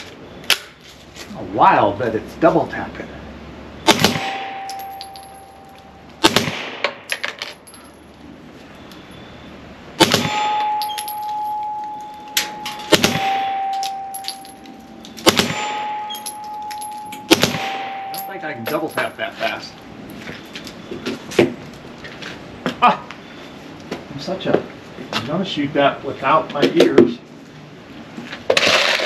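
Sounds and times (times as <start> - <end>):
suppressed pistol shots: 3.9 - 4.5, 6.2 - 7.0, 12.9 - 13.6, 17.3 - 17.9
steel target ringing: 4.1 - 6.0, 10.1 - 19.9.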